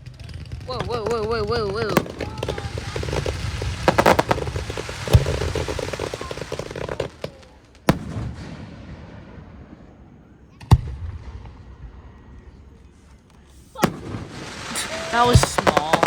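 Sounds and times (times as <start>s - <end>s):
dense firework crackling: 0.0s - 12.2s, 13.6s - 16.0s
firework sharp cracks: 0.4s - 9.6s, 13.6s - 16.0s
firework booms: 0.4s - 10.0s, 13.6s - 16.0s
firework heavy bang: 0.5s - 9.6s, 13.6s - 16.0s.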